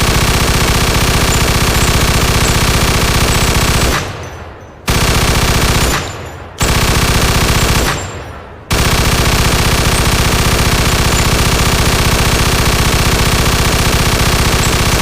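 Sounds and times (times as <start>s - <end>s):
machine gun firing bursts: 0.0s - 15.0s.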